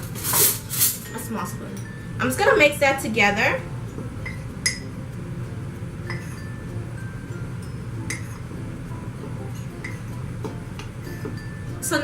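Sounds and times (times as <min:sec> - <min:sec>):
background music: 0:00.0 - 0:12.0
metal spoon clinking against mug: 0:04.2 - 0:04.9, 0:08.1 - 0:08.4.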